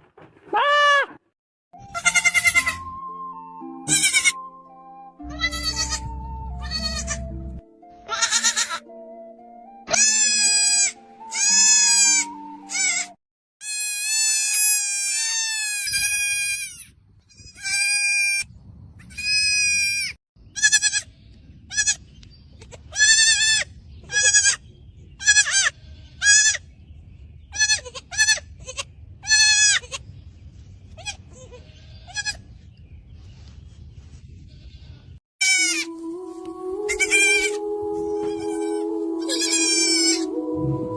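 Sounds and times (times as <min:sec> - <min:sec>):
baby goat bleating: 0:01.8 - 0:02.8, 0:03.9 - 0:04.4, 0:05.3 - 0:07.3, 0:08.0 - 0:08.8, 0:09.9 - 0:18.4, 0:19.1 - 0:21.1, 0:21.7 - 0:22.0, 0:22.6 - 0:24.6, 0:25.2 - 0:26.6, 0:27.5 - 0:30.0, 0:31.0 - 0:32.5, 0:34.5 - 0:36.0, 0:36.9 - 0:37.6, 0:38.2 - 0:40.3
music: 0:01.8 - 0:13.2, 0:35.9 - 0:40.9.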